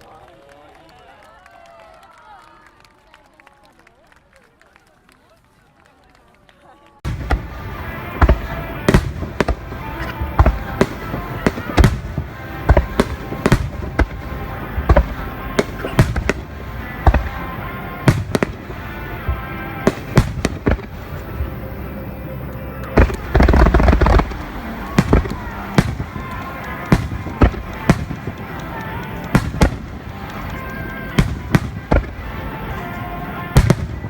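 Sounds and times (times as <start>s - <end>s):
fireworks bursting: 7.1s - 34.0s
music playing: 7.1s - 34.0s.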